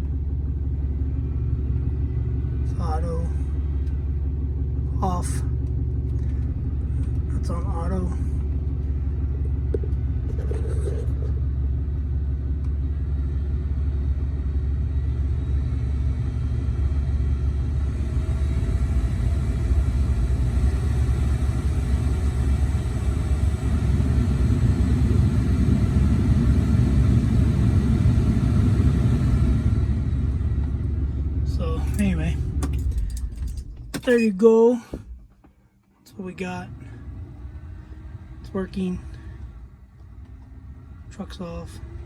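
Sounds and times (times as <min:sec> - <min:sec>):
blower motor running: 0:00.0 - 0:35.5
diesel engine idling: 0:00.0 - 0:42.0.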